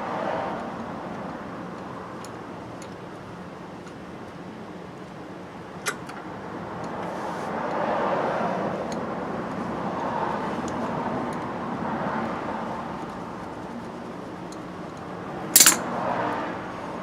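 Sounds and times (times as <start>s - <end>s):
vehicle traffic noise: 0.0s - 17.0s
sharp click: 15.6s - 15.8s.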